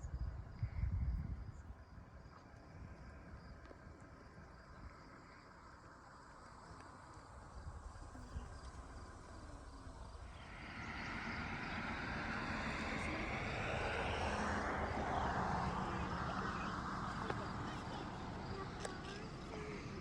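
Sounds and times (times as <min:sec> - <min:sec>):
vehicle passing by: 0:09.9 - 0:20.0.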